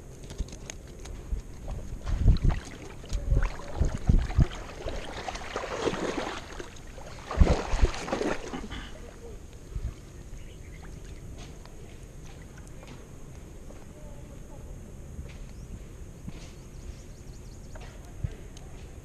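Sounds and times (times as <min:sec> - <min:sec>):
water sloshing against boat hull: 0:00.6 - 0:13.0.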